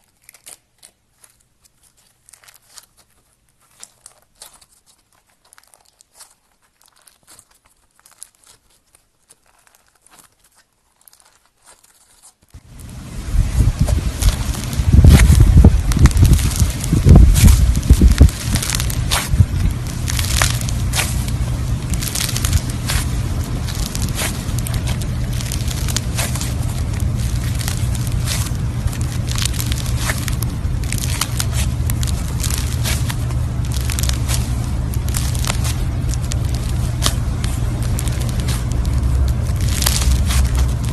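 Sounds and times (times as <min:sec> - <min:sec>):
slime crackling and popping: 0:00.0 - 0:40.9
loud rushing noise: 0:12.6 - 0:40.9
steady low hum: 0:12.6 - 0:40.9.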